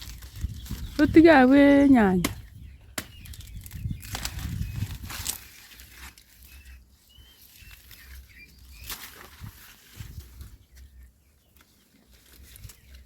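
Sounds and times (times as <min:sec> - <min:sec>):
faint bird chirps: 0:00.3 - 0:13.0
rustling: 0:03.2 - 0:13.0.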